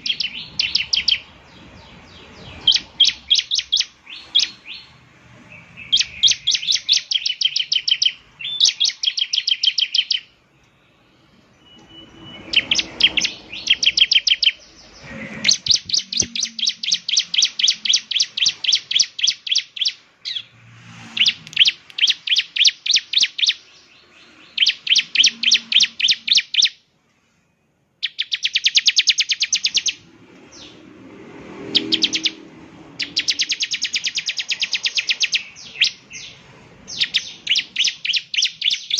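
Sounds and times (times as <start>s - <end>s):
bird singing rapid high chirps: 0.0s - 20.5s, 21.1s - 26.9s, 28.0s - 30.9s, 31.6s - 38.9s.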